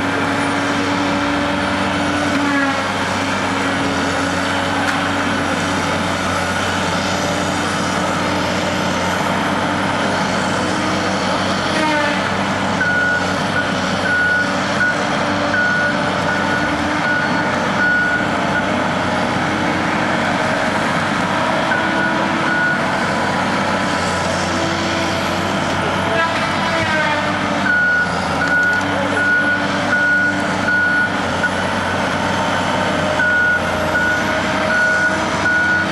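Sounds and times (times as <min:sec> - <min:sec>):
diesel engine running: 0:00.0 - 0:35.9
reversing alarm beeps: 0:12.8 - 0:18.7, 0:21.7 - 0:22.8, 0:27.7 - 0:31.6, 0:33.2 - 0:35.9.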